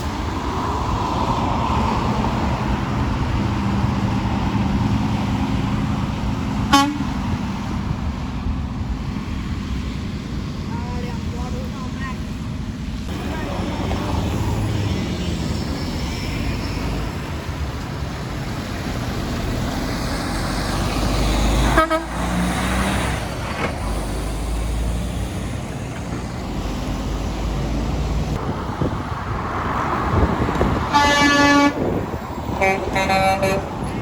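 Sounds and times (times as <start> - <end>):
diesel truck engines running: 0.0 - 34.0
long truck horn blast: 6.6 - 7.3, 21.5 - 23.0, 30.8 - 34.0
short horn toot: 30.9 - 31.8.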